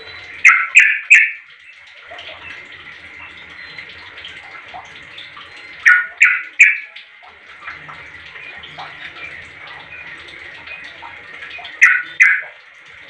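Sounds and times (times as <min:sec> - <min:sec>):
bird twittering: 0:00.4 - 0:01.4, 0:05.6 - 0:07.0, 0:11.8 - 0:12.6.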